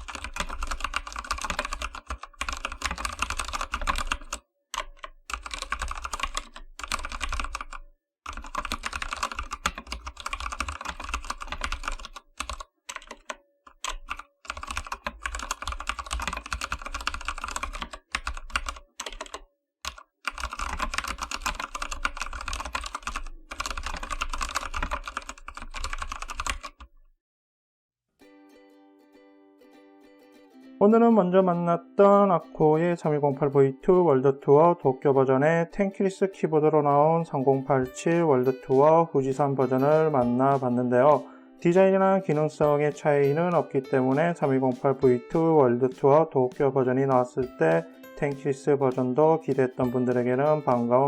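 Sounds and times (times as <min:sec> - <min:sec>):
mechanical keyboard typing: 0:00.0 - 0:27.0.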